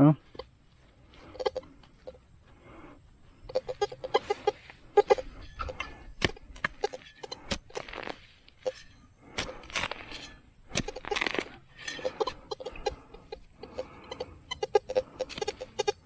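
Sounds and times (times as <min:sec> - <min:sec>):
metal detector chirping: 0:00.2 - 0:00.6, 0:01.2 - 0:02.2, 0:03.4 - 0:16.0
digging knocks and scraping: 0:03.4 - 0:16.0.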